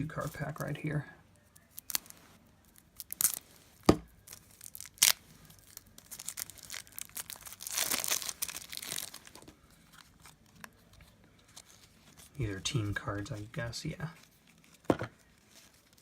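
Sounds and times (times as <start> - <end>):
wrapper crinkling and tearing: 1.5 - 12.4, 14.2 - 16.0
wrapper snapping: 1.6 - 10.7.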